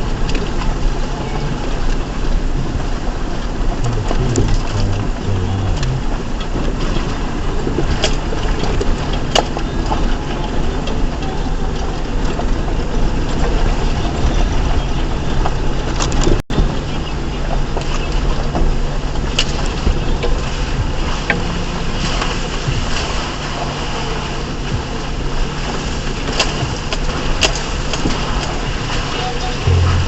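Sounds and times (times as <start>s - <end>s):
truck engine running at low speed: 29.6s - 30.0s.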